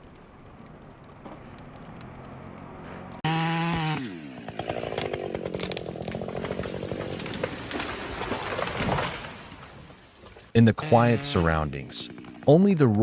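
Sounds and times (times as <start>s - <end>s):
chainsaw cutting wood: 3.2s - 8.8s, 10.8s - 13.0s.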